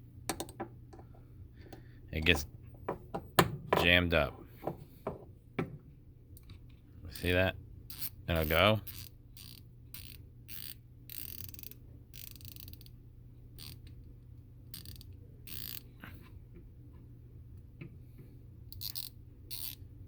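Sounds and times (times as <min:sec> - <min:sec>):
hand ratchet pawl clicking: 0:07.9 - 0:12.9, 0:13.6 - 0:13.9, 0:14.7 - 0:15.8, 0:18.7 - 0:19.8.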